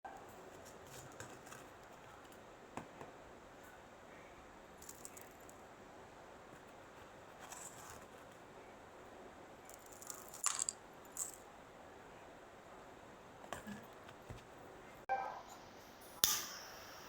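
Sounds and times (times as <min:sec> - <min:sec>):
small hard objects clicking: 0:04.8 - 0:05.6, 0:09.7 - 0:11.4.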